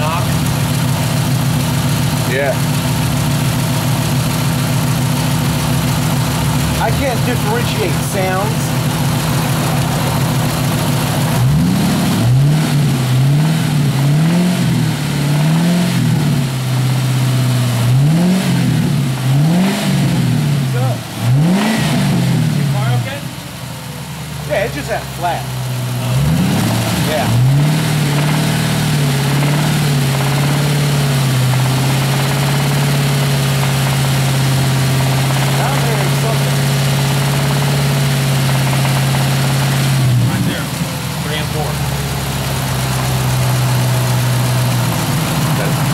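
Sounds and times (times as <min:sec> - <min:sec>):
car engine idling: 0:00.0 - 0:45.9
engine revving in short blips: 0:09.2 - 0:23.2, 0:25.8 - 0:45.9.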